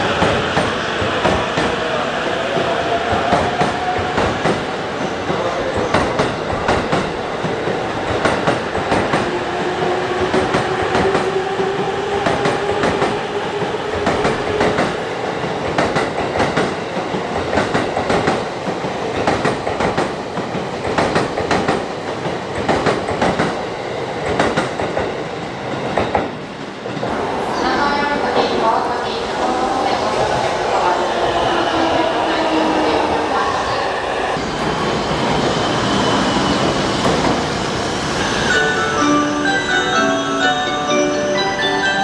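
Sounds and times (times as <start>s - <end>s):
train motor whine rising: 34.3s - 38.8s.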